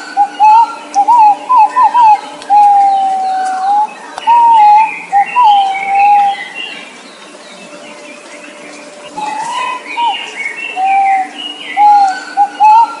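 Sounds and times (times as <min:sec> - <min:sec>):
pigeon fluting whistles: 0:00.0 - 0:06.6, 0:09.2 - 0:13.0
small birds chirping: 0:00.0 - 0:13.0.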